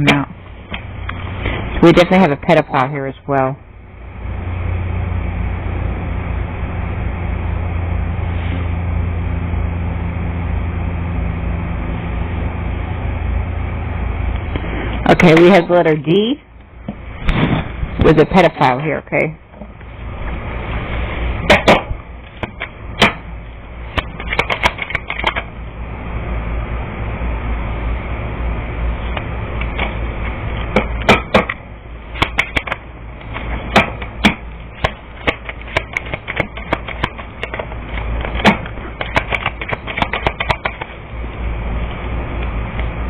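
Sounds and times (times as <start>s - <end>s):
steady low hum: 0.0s - 43.0s
sharp clicks and taps: 24.0s - 25.5s, 33.8s - 40.9s.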